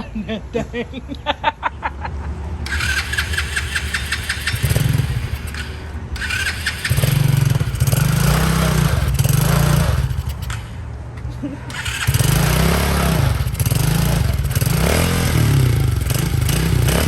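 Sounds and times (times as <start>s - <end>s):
dirt bike engine revving: 2.6s - 10.8s, 11.7s - 17.0s.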